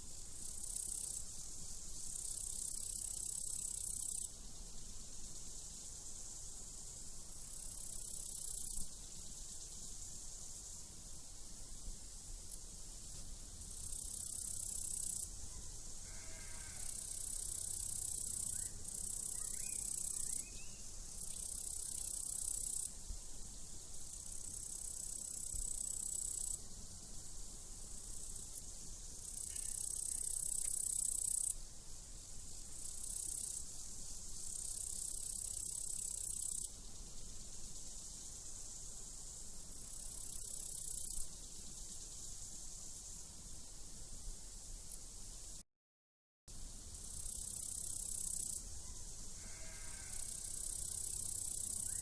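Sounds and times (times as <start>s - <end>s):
crickets chirping: 0.0s - 45.6s, 46.5s - 52.0s
sheep bleating faintly: 16.0s - 17.0s, 49.4s - 50.3s.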